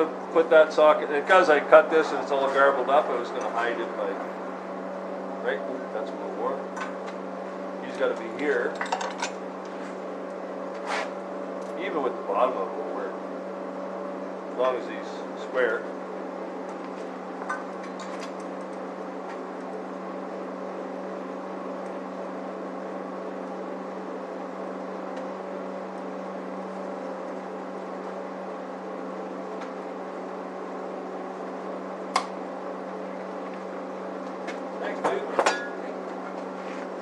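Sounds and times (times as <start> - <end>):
rattling machine hum: 0.0 - 20.6
sharp click: 32.1 - 32.4.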